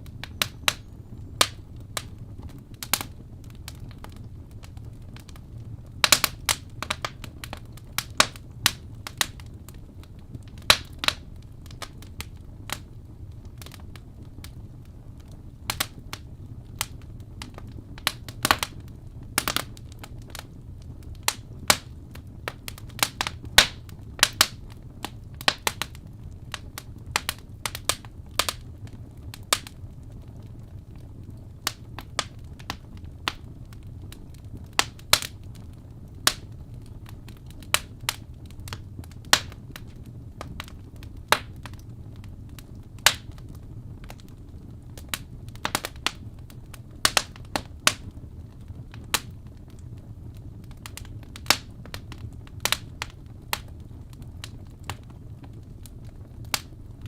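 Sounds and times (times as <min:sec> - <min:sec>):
burning logs popping and snapping: 0:00.0 - 0:57.0
low rumble of flames: 0:00.0 - 0:57.0.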